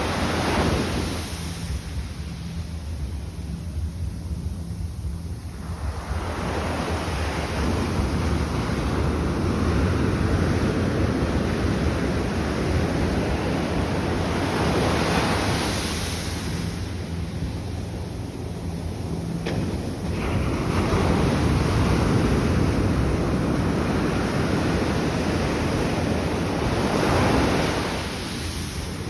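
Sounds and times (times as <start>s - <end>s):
waves washing in: 0.0s - 29.0s
wind on microphone: 0.0s - 29.0s.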